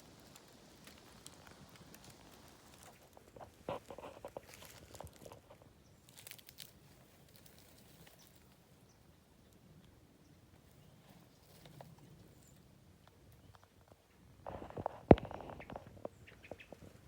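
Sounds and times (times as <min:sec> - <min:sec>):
footsteps crunching on forest floor: 0:00.2 - 0:08.5.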